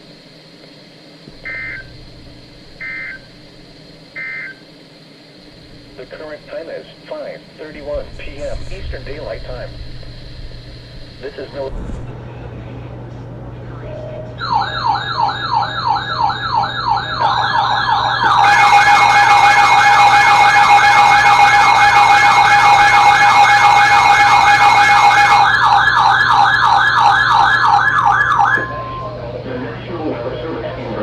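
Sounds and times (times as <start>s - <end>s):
electronic siren yelping: 1.4s - 2.0s, 2.7s - 4.6s, 14.4s - 29.2s
steady tone: 14.4s - 30.0s.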